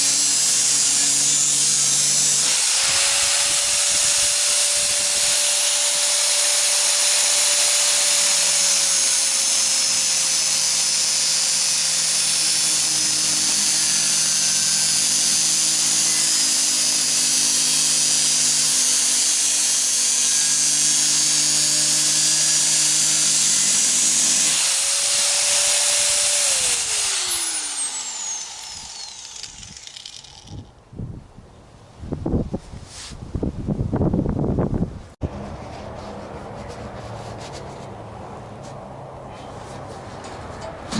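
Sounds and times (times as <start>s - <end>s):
power tool cutting sheet metal: 0.0s - 30.7s.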